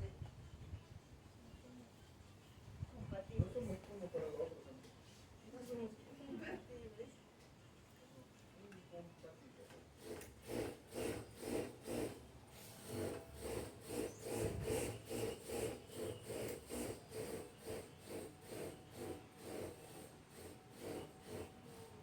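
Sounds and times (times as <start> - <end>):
electric fan rubbing scrape: 10.0 - 22.0.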